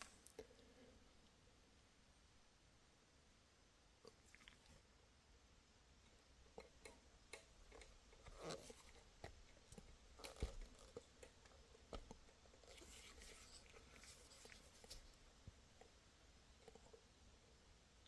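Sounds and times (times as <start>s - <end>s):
handling rustles: 8.2s - 15.3s.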